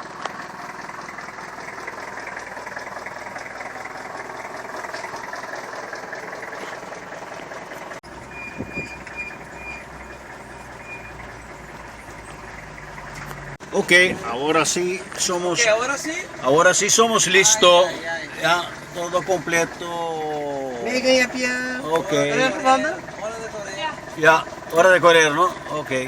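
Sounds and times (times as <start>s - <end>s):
low engine hum: 0.0s - 26.0s
vehicle running noise: 0.0s - 26.0s
vehicle warning beeper: 8.0s - 12.3s.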